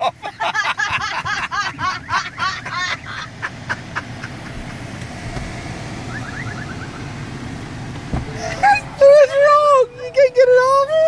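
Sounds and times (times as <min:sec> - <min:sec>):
low steady rumble: 0:00.1 - 0:11.0
electronic alarm warbling: 0:06.1 - 0:07.0.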